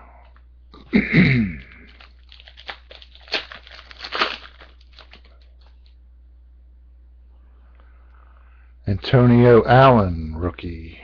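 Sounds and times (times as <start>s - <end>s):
foil wrapper crinkling: 1.5s - 6.0s.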